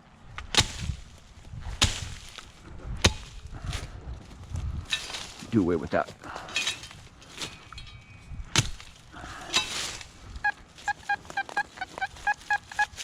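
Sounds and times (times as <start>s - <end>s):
digging in soil: 0.0s - 13.0s
metal detector short beeps: 10.4s - 13.0s.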